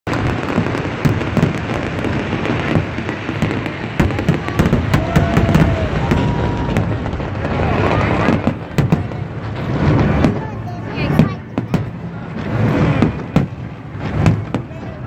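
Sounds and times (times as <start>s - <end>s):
fireworks bangs and crackling: 0.1s - 15.0s
faint firework whistling: 0.2s - 10.4s.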